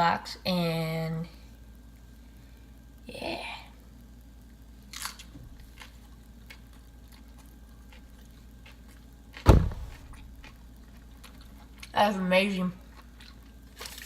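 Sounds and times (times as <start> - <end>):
dull thump: 9.4 - 10.1.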